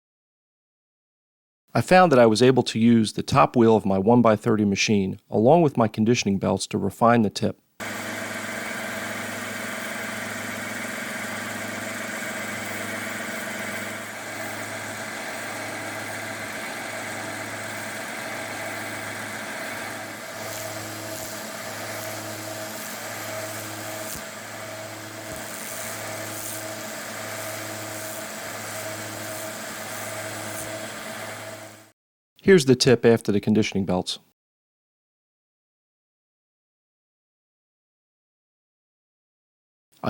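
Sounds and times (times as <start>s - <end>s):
belt sander motor hum: 7.8s - 31.9s
belt scratching metal: 11.2s - 31.8s.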